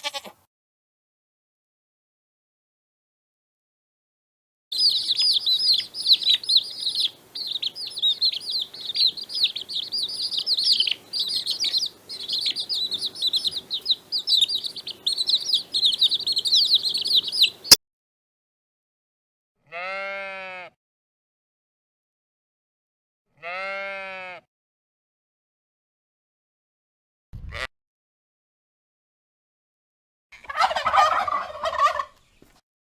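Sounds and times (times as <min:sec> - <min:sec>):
sheep bleating: 0:00.0 - 0:00.4, 0:19.6 - 0:20.8, 0:23.4 - 0:24.5
small birds chirping: 0:04.8 - 0:17.8.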